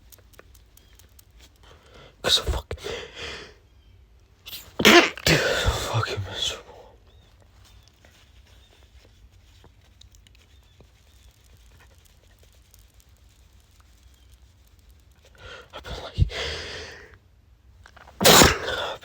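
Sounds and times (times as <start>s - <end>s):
man sneezing: 2.2s - 3.5s, 4.5s - 6.8s, 15.8s - 17.1s, 18.2s - 19.0s.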